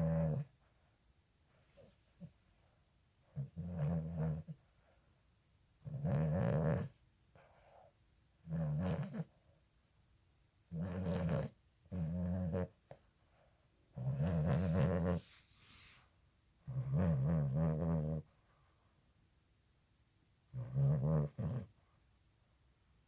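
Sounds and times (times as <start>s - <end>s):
puppy snoring: 0.0s - 0.6s, 1.6s - 2.4s, 3.2s - 4.6s, 5.8s - 9.4s, 10.7s - 13.0s, 13.9s - 15.9s, 16.6s - 18.3s, 20.5s - 21.8s.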